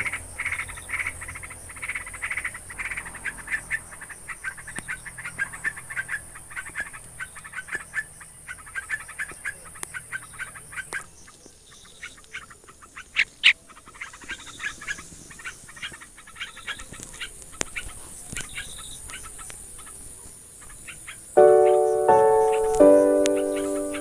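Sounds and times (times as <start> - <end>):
small birds chirping: 0.0 - 24.0
steady high hiss: 21.4 - 24.0.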